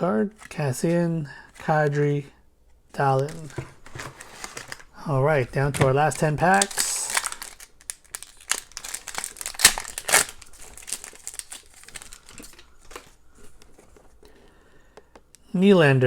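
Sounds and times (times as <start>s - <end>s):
plastic wrapper crinkling and tearing: 3.3s - 5.0s, 5.7s - 14.0s.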